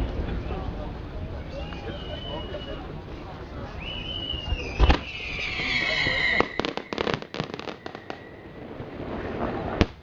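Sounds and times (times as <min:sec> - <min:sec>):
whistling firework shells: 0:03.8 - 0:08.6
crackling firework pops: 0:04.5 - 0:05.2, 0:06.4 - 0:08.3, 0:08.9 - 0:10.0
firework bang: 0:04.6 - 0:05.4, 0:06.4 - 0:10.0.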